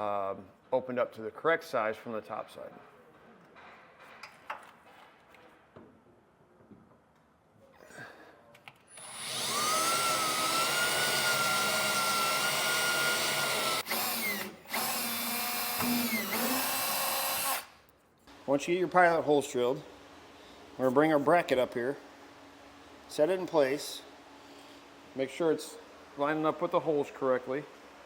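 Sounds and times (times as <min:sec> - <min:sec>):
power drill whining: 0:08.9 - 0:17.7.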